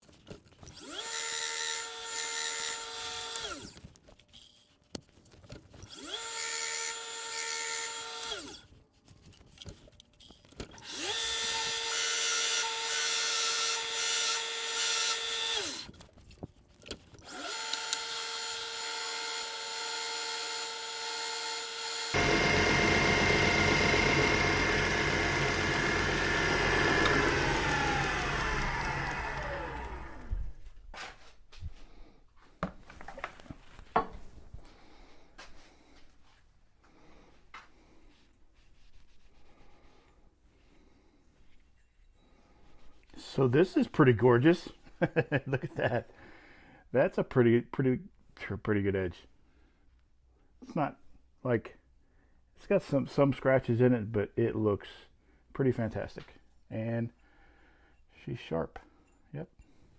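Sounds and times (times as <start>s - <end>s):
belt grinder whining: 0.6s - 3.8s, 5.8s - 8.6s, 10.8s - 15.9s, 17.2s - 30.6s
rough grinding: 21.9s - 30.6s.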